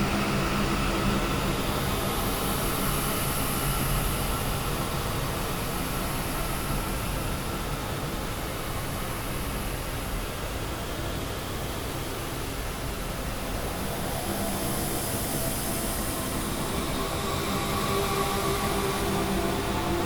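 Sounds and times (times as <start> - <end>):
noise drone music: 13.4 - 20.0.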